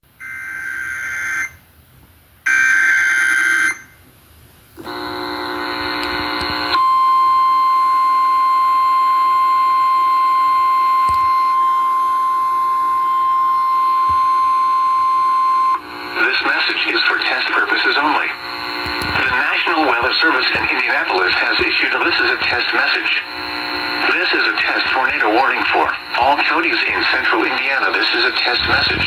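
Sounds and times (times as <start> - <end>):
steady attention tone: 0.1 - 29.0
buzzing digital data bursts: 3.7 - 6.8, 23.2 - 24.1.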